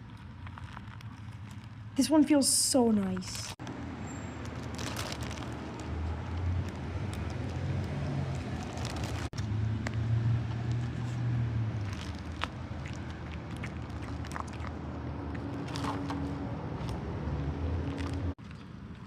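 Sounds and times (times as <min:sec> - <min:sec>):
faint clicks and rustles: 0:00.0 - 0:02.0.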